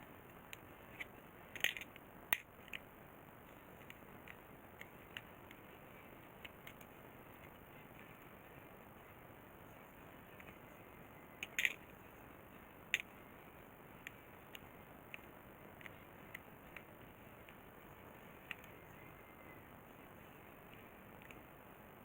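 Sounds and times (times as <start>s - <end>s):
hand tools clicking and tapping: 11.3s - 11.9s.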